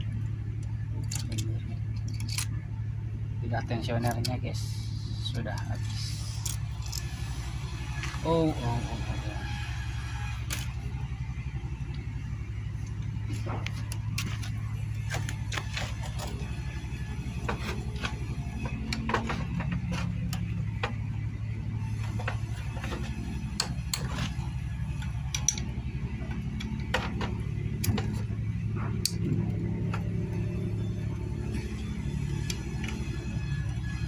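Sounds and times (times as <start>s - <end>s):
steady low hum: 0.0s - 34.0s
metallic clicks of tools: 0.6s - 2.6s, 25.0s - 25.7s, 29.0s - 29.4s.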